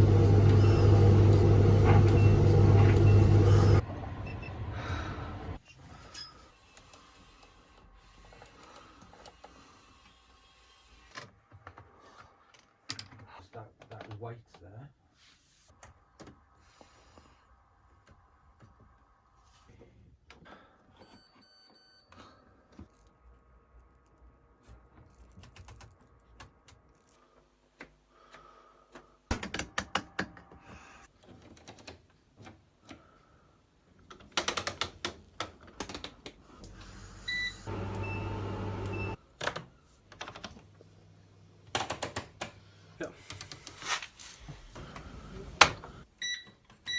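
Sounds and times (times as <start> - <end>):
washing machine hum: 0.0 - 5.6, 36.4 - 43.2, 44.2 - 46.0.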